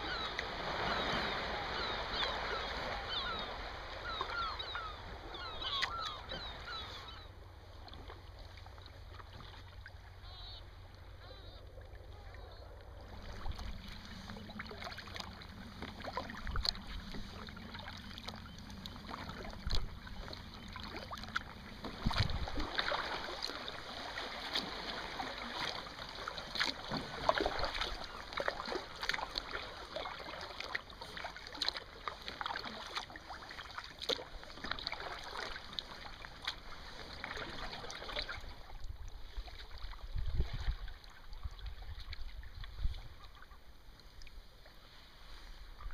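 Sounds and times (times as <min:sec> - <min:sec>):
kayak paddle splashing: 0:00.0 - 0:45.9
water dripping off paddle: 0:13.3 - 0:23.6, 0:24.5 - 0:38.4.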